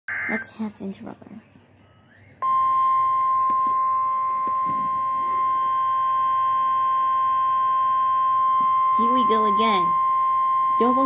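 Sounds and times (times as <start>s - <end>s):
steady alarm tone: 2.4s - 11.0s.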